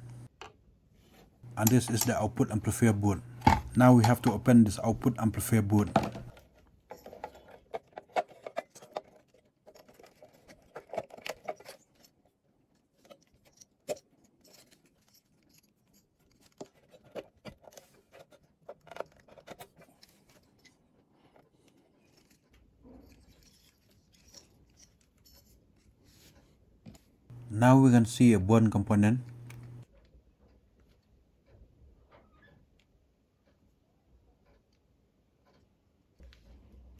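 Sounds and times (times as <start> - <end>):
hand tools clicking and tapping: 1.4 - 6.3, 28.9 - 29.8.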